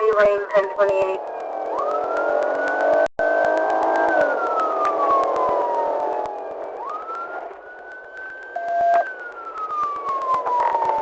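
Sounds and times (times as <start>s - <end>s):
police siren wailing: 0.0s - 11.0s
sharp crackling clicks: 0.0s - 11.0s.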